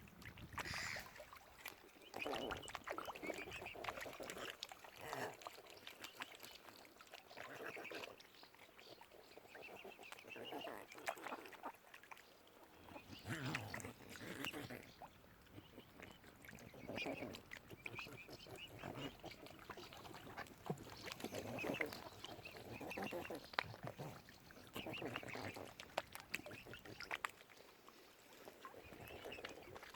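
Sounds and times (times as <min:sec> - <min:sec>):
waterfowl calling: 0:12.9 - 0:27.2.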